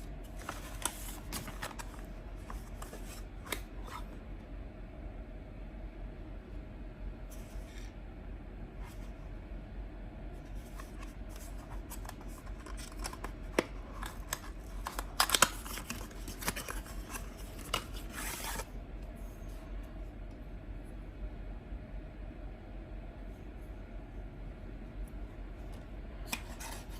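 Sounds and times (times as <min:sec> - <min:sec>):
packaging being opened by hand: 0:00.3 - 0:04.0, 0:10.6 - 0:18.7.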